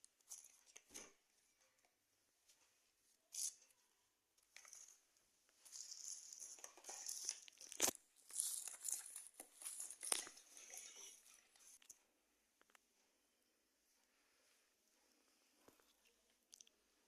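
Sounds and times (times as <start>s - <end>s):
plastic packaging tearing and crinkling: 5.7s - 11.1s.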